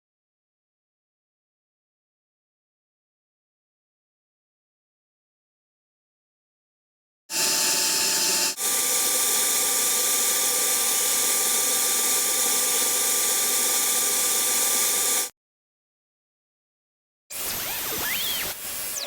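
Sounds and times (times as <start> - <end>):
bandsaw cutting wood: 7.3 - 15.3.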